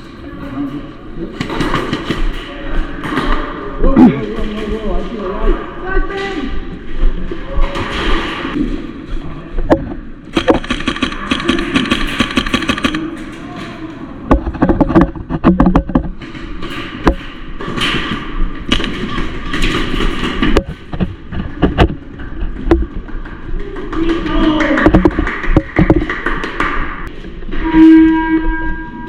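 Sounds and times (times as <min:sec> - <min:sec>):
airsoft gunfire: 0:10.3 - 0:13.1
sharp knocks: 0:14.3 - 0:23.4.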